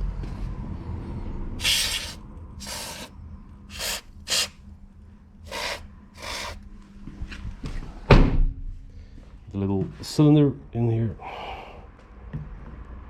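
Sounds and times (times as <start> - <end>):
aerosol can spraying: 1.6 - 3.1, 3.7 - 4.5, 5.5 - 6.6.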